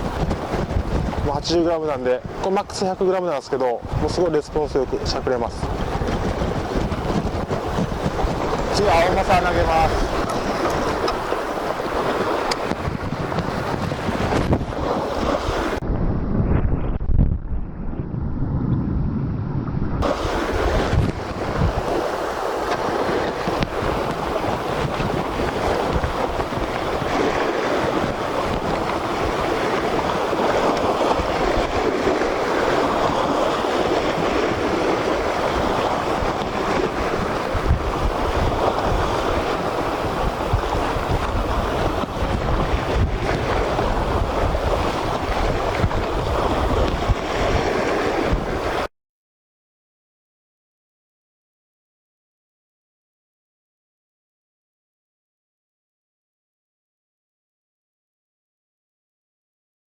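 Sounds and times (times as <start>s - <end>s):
sea surf washing on shore: 0.0s - 16.0s, 20.0s - 48.9s
wind buffeting microphone: 0.0s - 48.9s.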